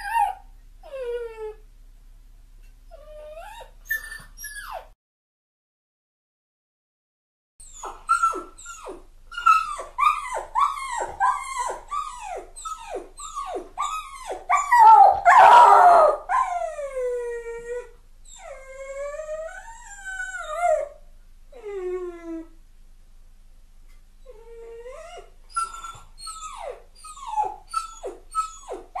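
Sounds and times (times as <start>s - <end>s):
dog yelping: 0.0s - 0.4s, 3.0s - 4.9s, 7.6s - 16.7s, 25.5s - 29.0s
dog howling whines: 0.0s - 1.6s, 7.8s - 21.0s.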